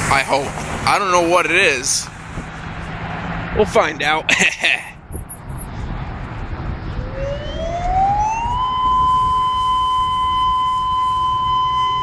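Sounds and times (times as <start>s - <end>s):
tornado warning siren rising: 5.1s - 12.0s.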